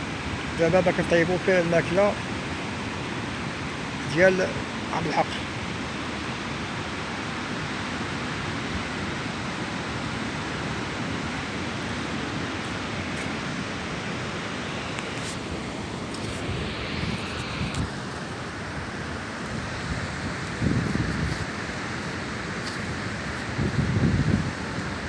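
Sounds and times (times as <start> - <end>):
sea surf rushing: 0.0 - 25.0
wind on microphone: 15.0 - 25.0.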